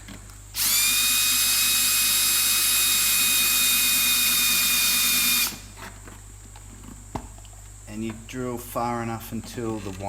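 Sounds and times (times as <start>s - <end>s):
electric drill whining: 0.6s - 5.7s.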